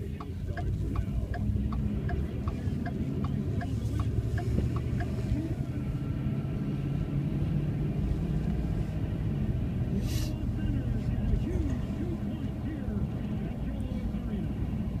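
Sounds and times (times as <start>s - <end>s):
light even ticking: 0.0s - 5.2s
car engine and tyres from inside cabin: 0.0s - 15.0s.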